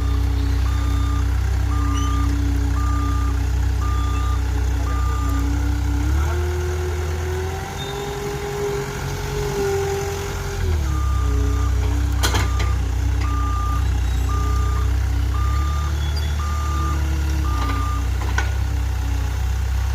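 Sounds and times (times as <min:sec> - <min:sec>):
reversing alarm beeping: 0:00.0 - 0:05.6, 0:07.7 - 0:08.3, 0:10.8 - 0:18.1
engine running: 0:00.0 - 0:19.9.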